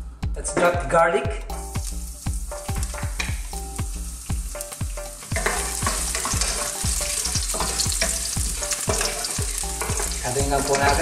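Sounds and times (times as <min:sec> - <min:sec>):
garlic sizzling in hot oil: 0:01.6 - 0:11.0
spoon scraping pan: 0:05.2 - 0:11.0.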